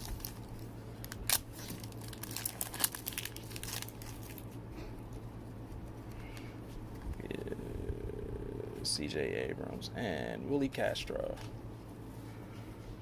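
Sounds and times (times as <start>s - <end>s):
wrapper crinkling: 0.0s - 4.6s.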